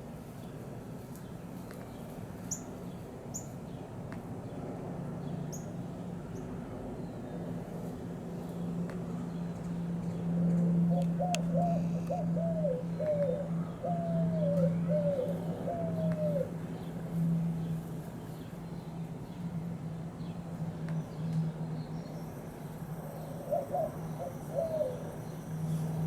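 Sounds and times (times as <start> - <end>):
steady low hum: 0.0 - 26.0
dove cooing: 10.7 - 16.6, 23.2 - 25.2.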